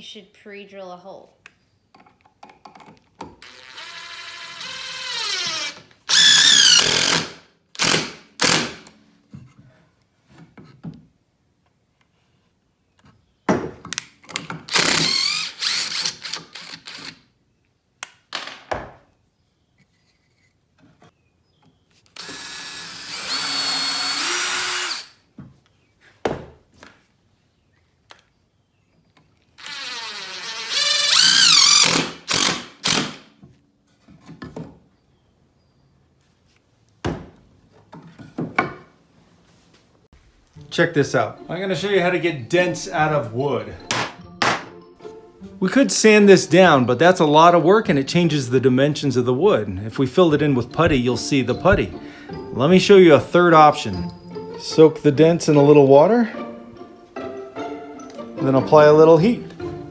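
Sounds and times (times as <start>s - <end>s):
power drill running: 3.4s - 8.9s, 14.7s - 17.2s, 22.2s - 25.2s, 29.6s - 33.2s.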